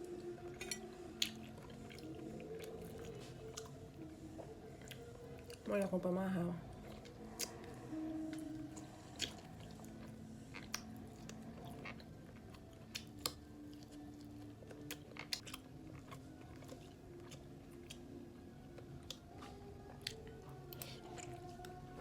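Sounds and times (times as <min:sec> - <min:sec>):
person chewing and biting: 0:09.1 - 0:18.0.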